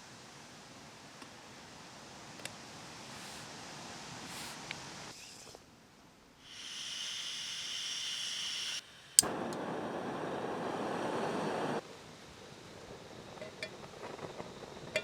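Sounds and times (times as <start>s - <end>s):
high hiss: 2.2s - 5.4s, 6.4s - 15.0s.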